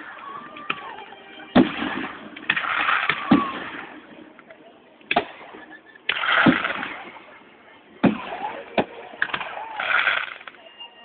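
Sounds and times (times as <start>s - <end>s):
fireworks crackling: 0.0s - 7.4s, 8.0s - 10.7s
fireworks bangs: 0.6s - 4.3s, 5.1s - 7.3s, 8.0s - 10.6s.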